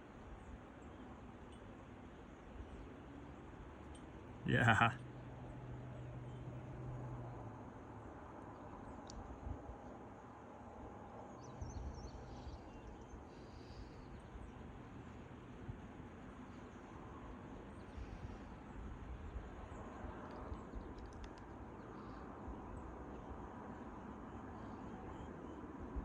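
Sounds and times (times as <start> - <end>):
wind rumble on microphone: 8.8 - 9.9, 11.3 - 14.6, 16.9 - 23.8.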